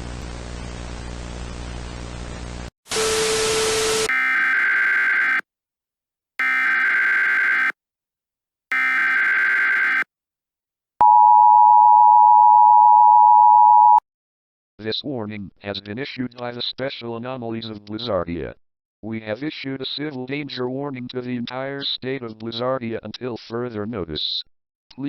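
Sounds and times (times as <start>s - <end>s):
two-tone attention signal: 11.0s - 14.0s.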